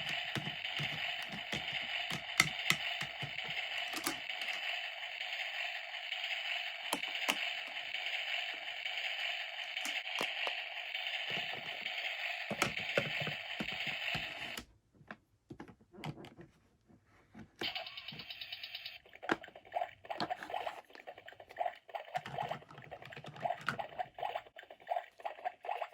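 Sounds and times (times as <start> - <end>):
plastic toy pieces clicking: 0.0 - 4.8, 6.3 - 10.6, 12.5 - 14.6.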